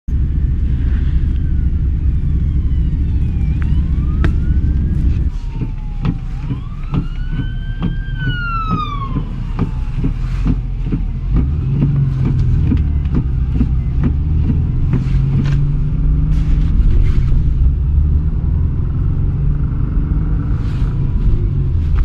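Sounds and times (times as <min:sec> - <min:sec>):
heavy low rumble: 0:00.1 - 0:22.0
emergency siren wailing: 0:00.6 - 0:11.3.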